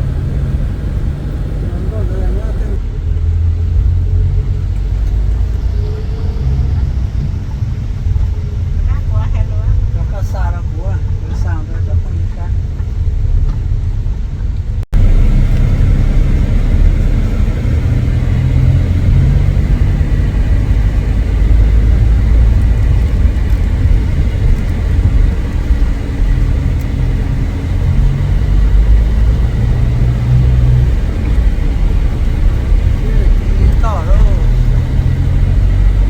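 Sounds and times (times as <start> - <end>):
traffic rumble: 0.0 - 36.0.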